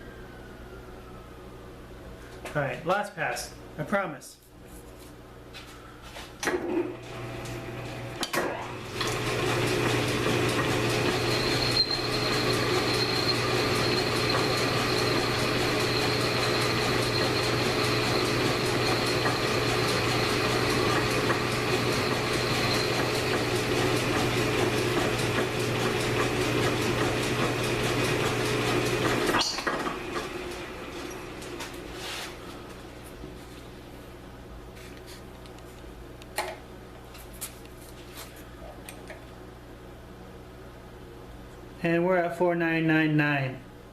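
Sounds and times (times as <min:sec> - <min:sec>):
lathe motor humming: 0:06.9 - 0:32.2
lathe clicks and knocks: 0:12.0 - 0:30.3.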